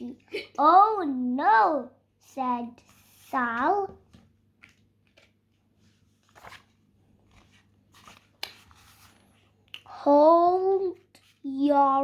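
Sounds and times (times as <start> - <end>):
book page rustles: 2.8 - 9.9.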